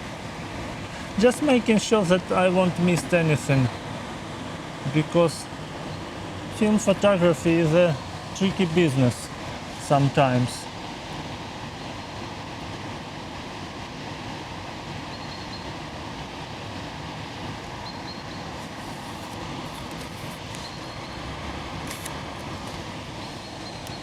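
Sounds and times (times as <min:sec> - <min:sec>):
river water rushing: 0:00.0 - 0:15.1, 0:15.8 - 0:24.0
faint high chirps: 0:15.1 - 0:15.7.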